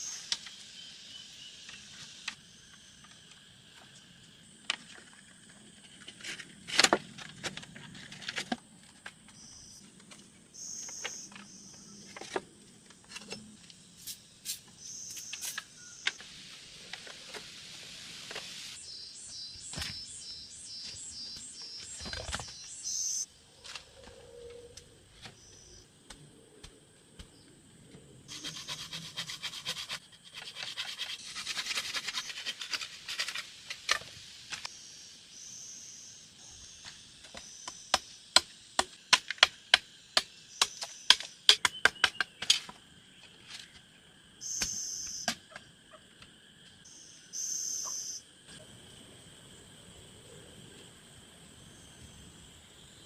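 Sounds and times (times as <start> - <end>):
high insect drone: 0.0 - 53.0
rasping rubbing sounds: 28.3 - 33.4.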